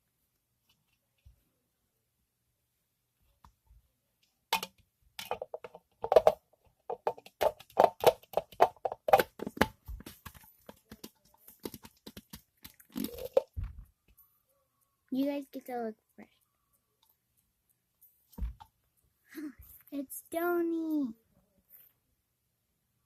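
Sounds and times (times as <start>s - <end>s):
handling taps and clicks: 4.6s - 14.2s.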